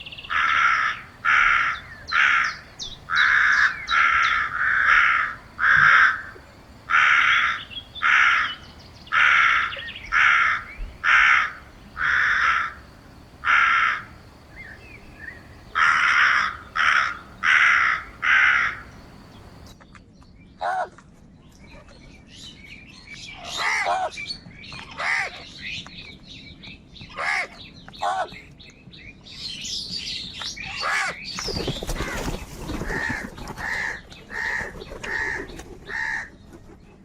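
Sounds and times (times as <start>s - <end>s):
crows cawing: 0.2s - 14.2s, 15.7s - 19.0s, 23.5s - 24.1s, 24.9s - 25.4s, 27.1s - 28.3s, 30.7s - 31.2s, 31.9s - 36.3s.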